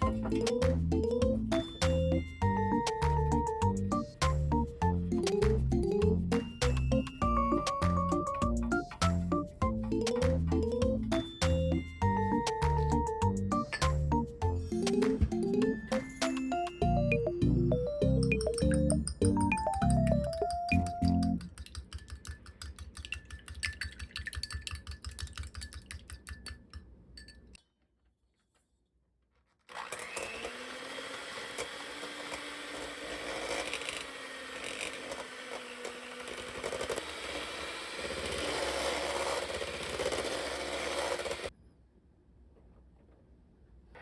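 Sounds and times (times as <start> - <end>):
rapid even clicking: 18.2 - 26.8
small electric motor humming: 29.8 - 41.5.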